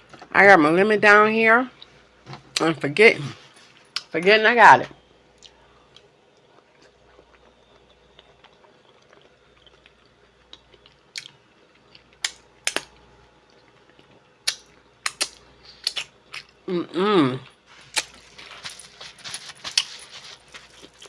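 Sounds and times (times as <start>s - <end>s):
person chewing food: 5.4s - 12.8s, 13.5s - 21.0s
mouth clicks and smacks: 14.4s - 16.5s.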